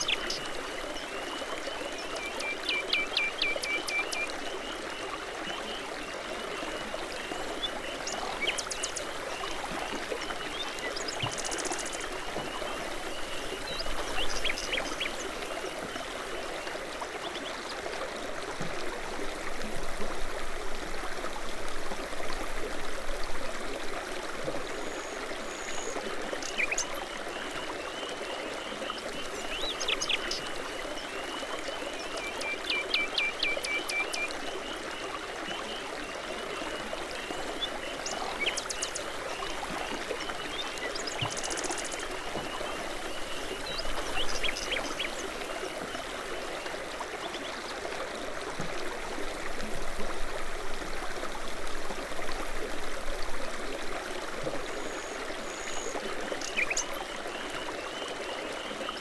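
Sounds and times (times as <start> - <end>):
brook water rushing: 0.0 - 59.0.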